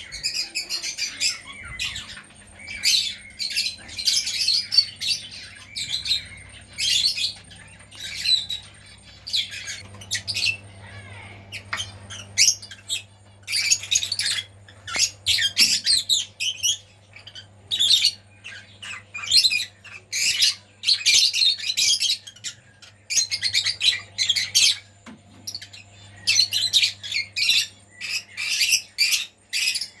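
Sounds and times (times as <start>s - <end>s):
birds chirping and squawking: 0.0s - 30.0s.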